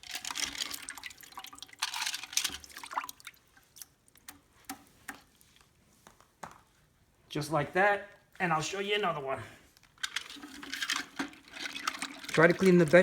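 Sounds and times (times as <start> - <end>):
water drips: 0.0 - 5.2
water sloshing in a bucket: 0.0 - 5.4, 10.1 - 13.0
fish scaler scraping: 10.0 - 13.0.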